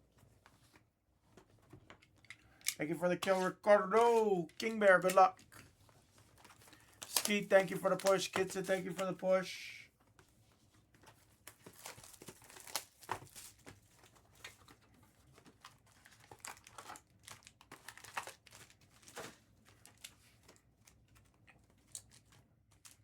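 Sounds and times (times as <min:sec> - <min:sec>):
plastic wrapping crinkling and tearing: 0:03.3 - 0:09.1, 0:11.0 - 0:23.0.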